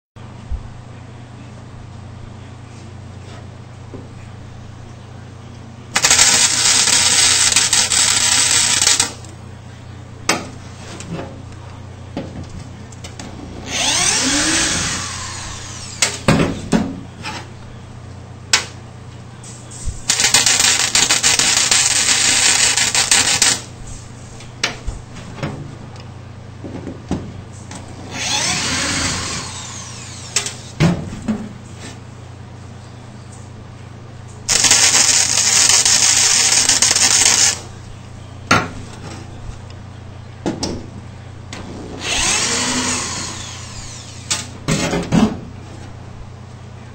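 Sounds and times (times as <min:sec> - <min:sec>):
steady low hum: 0:00.2 - 0:46.9
power drill running: 0:06.0 - 0:09.3, 0:13.6 - 0:16.1, 0:20.1 - 0:23.6, 0:28.1 - 0:30.7, 0:34.5 - 0:37.6, 0:42.0 - 0:44.5
welding arc crackle: 0:06.0 - 0:09.3, 0:20.0 - 0:23.8, 0:34.5 - 0:37.7.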